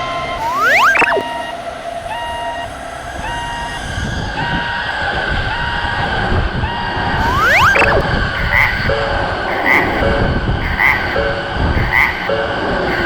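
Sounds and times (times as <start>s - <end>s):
rising whistle-like tone: 0.0s - 5.7s, 6.6s - 13.0s
railroad crossing alarm: 0.0s - 13.0s
train rumbling: 2.8s - 13.0s.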